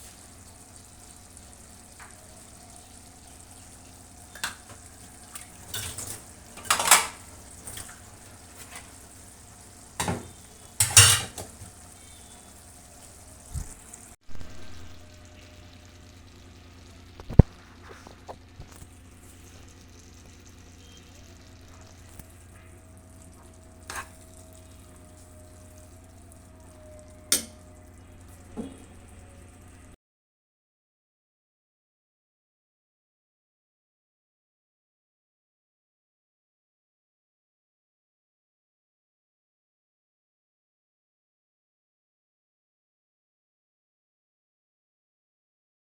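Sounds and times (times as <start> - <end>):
meat frying in a pan: 0.0 - 29.9
utensil scraping and clinking: 4.4 - 8.0, 10.0 - 12.2, 23.8 - 24.6.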